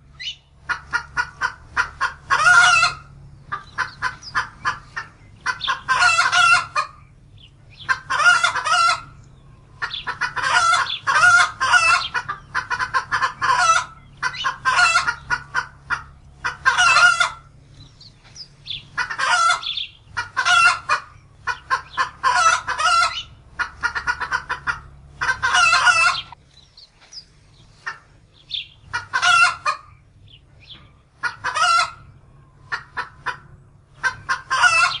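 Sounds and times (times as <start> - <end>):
hen cackling: 0.0 - 26.4, 27.1 - 35.0.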